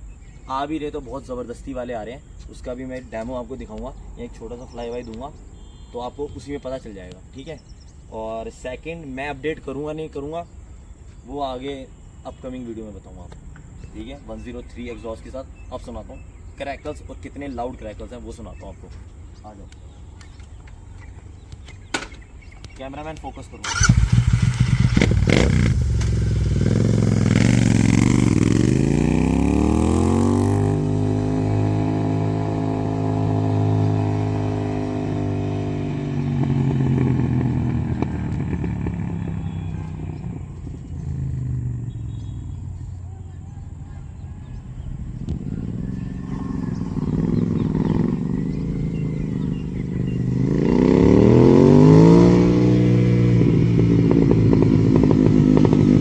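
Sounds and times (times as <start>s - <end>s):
motorcycle engine revving: 23.6s - 56.0s.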